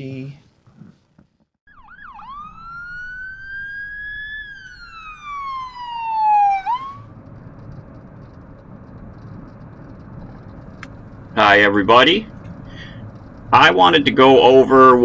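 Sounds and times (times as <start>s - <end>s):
electronic siren wail: 1.7s - 15.0s
steady low rumbling: 6.6s - 15.0s.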